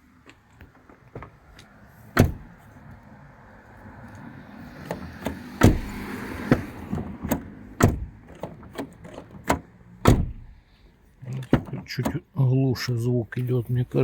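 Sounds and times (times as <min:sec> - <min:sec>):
van door slamming shut: 0:02.2 - 0:02.5, 0:04.9 - 0:08.7, 0:09.3 - 0:10.6.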